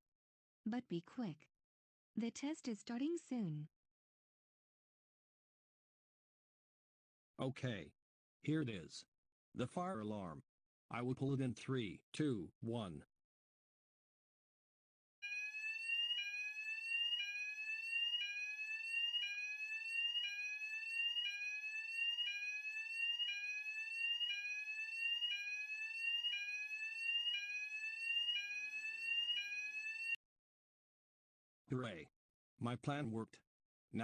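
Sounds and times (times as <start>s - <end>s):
fire alarm sweeping tone: 15.2s - 30.2s.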